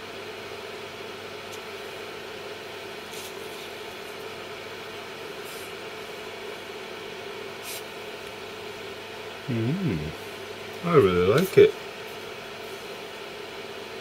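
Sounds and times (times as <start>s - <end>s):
small fan whirring: 0.0s - 14.0s.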